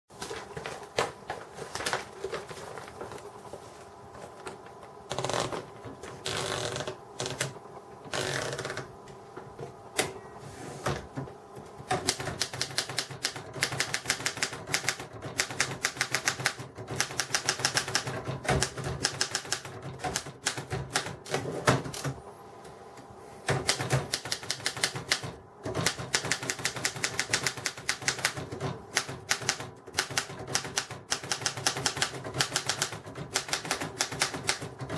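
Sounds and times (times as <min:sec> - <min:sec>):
manual typewriter keystrokes: 0:05.1 - 0:08.9, 0:11.9 - 0:22.1, 0:23.5 - 0:34.9.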